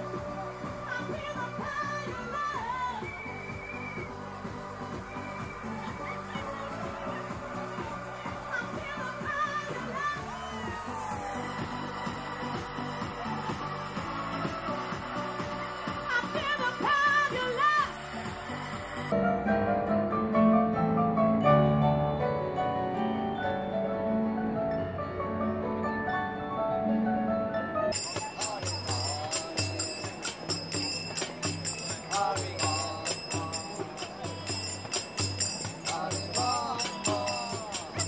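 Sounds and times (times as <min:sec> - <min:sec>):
pulsing bass line: 0:00.0 - 0:19.2
piano playing held notes: 0:19.1 - 0:28.6
jingling percussion: 0:27.9 - 0:38.0.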